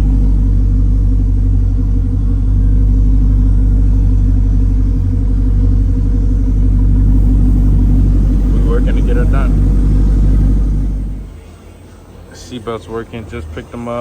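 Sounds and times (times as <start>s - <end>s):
vehicle engine rumbling: 0.0s - 14.0s.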